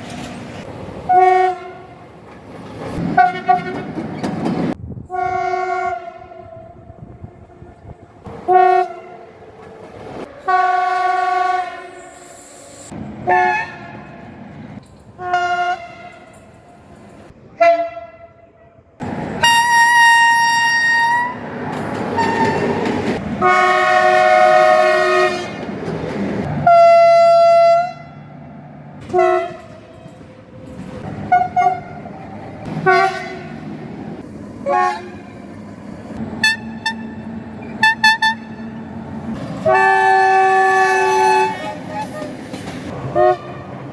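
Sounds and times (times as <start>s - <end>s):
passing train noise: 0.0s - 43.9s
train horn blasts: 1.1s - 2.0s, 3.1s - 3.9s, 5.1s - 9.3s, 10.4s - 12.2s, 13.2s - 14.0s, 15.2s - 16.4s, 17.6s - 18.6s, 19.4s - 21.4s, 22.2s - 22.8s, 23.4s - 25.6s, 26.6s - 28.2s, 29.0s - 29.8s, 31.2s - 32.1s, 32.7s - 33.6s, 34.6s - 35.3s, 36.4s - 38.8s, 39.6s - 42.3s, 43.1s - 43.8s.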